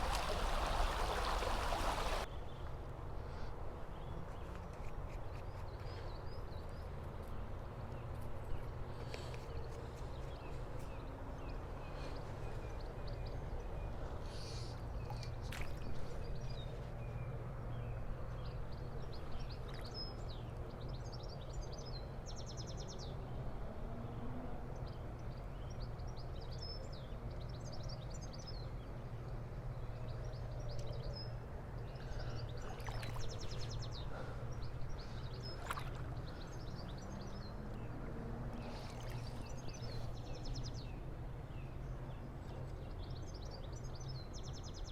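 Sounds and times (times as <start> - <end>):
small birds singing: 29.8 - 44.9.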